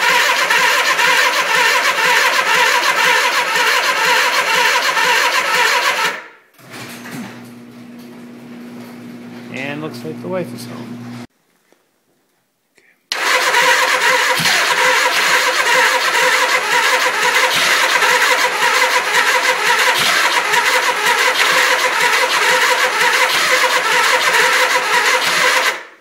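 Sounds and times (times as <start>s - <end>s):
electric starter cranking engine: 0.0s - 7.7s, 13.1s - 26.0s.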